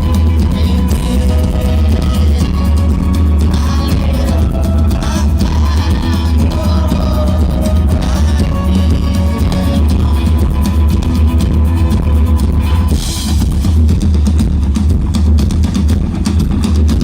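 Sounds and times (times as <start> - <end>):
person singing: 0.0 - 11.7
bass line: 0.0 - 17.0
electric guitar: 0.0 - 17.0.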